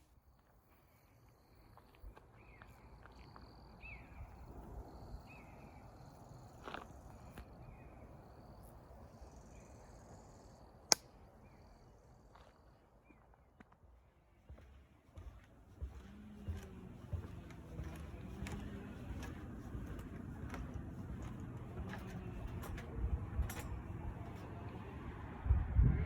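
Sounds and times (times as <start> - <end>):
faint woodland ambience: 0.0 - 25.4
sharp click: 10.9 - 11.1.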